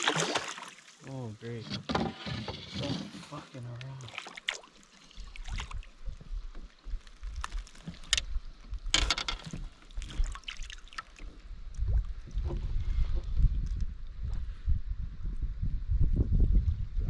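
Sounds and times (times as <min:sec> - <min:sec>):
clicks and knocks: 0:08.9 - 0:09.7
wind buffeting microphone: 0:11.4 - 0:17.0.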